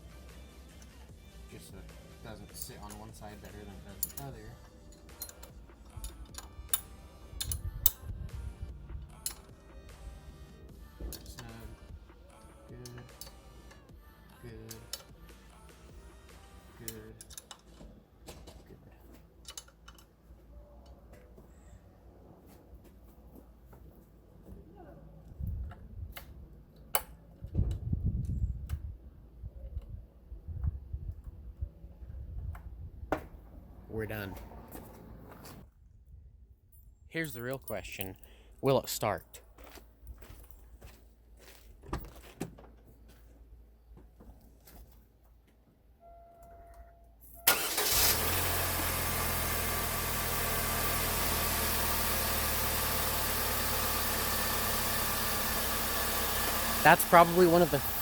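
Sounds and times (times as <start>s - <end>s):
hand tools clicking and knocking: 2.6s - 8.0s, 17.2s - 18.7s
car engine starting and idling: 47.5s - 58.0s.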